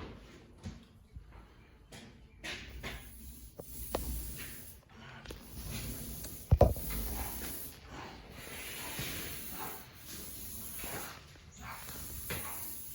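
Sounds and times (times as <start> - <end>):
hiss: 2.7 - 12.9.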